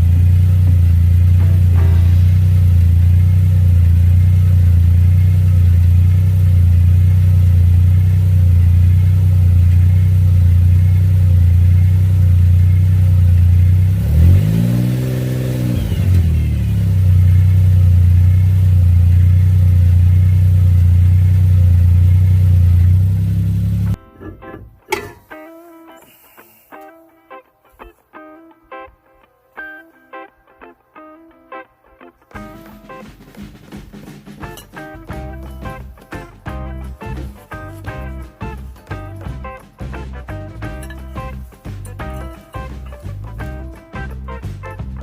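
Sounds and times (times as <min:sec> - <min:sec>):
car engine running: 0:00.0 - 0:24.0.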